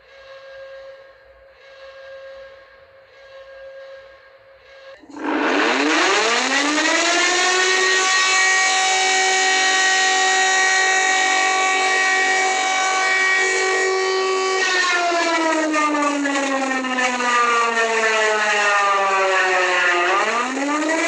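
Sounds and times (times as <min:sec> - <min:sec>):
civil defense siren wailing: 0:04.9 - 0:21.0.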